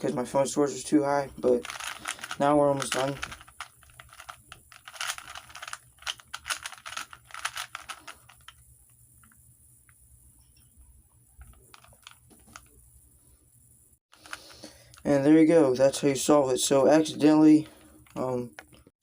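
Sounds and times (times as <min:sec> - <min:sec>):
puzzle cube clicking and rattling: 0:01.4 - 0:08.6, 0:11.4 - 0:12.8.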